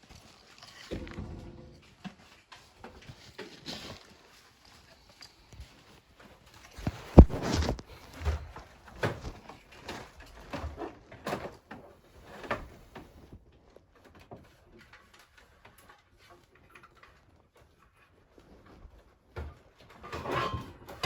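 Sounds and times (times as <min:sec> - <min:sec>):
dull knocks and thumps: 0:06.8 - 0:09.5.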